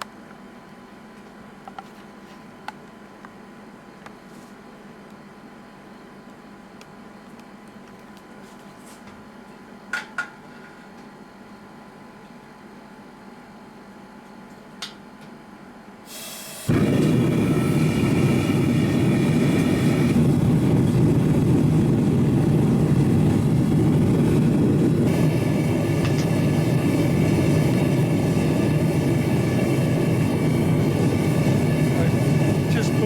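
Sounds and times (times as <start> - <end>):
gas hiss: 16.1 - 21.1, 24.5 - 33.0
forge burner rushing: 16.1 - 33.0.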